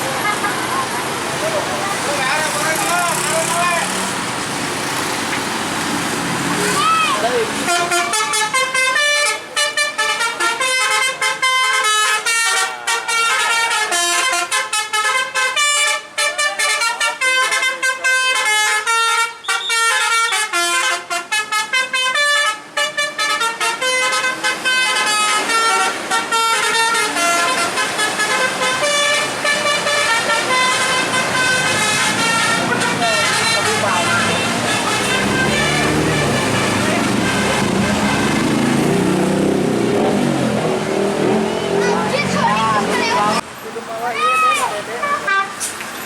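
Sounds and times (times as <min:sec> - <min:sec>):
musical air horn tunes: 0:07.6 - 0:38.8.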